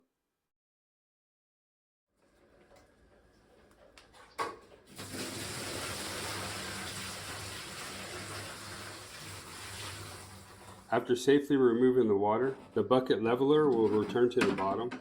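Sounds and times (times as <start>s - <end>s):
water pouring from bucket: 4.2s - 11.0s
plastic bucket knock: 13.8s - 15.0s.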